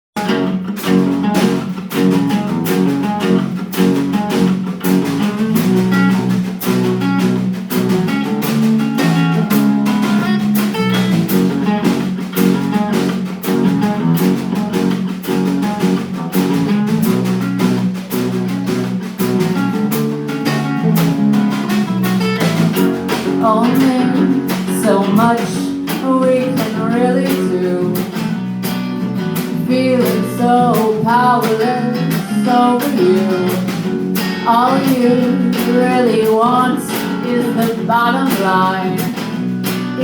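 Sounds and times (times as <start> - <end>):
guitar: 0.1 - 40.0
live rock band playing: 0.2 - 40.0.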